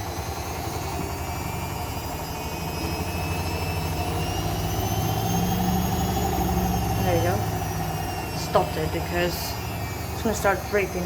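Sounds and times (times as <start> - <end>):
high whine rising in pitch: 0.0 - 11.0
washing machine humming: 0.0 - 11.0.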